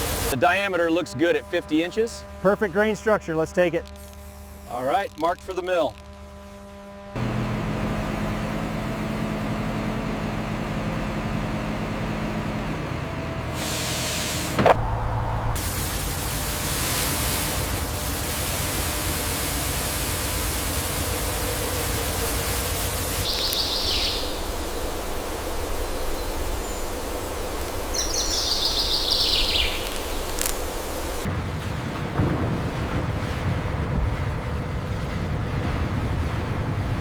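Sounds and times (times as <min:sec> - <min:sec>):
outdoor ambient hiss: 0:00.0 - 0:06.9, 0:13.6 - 0:31.3.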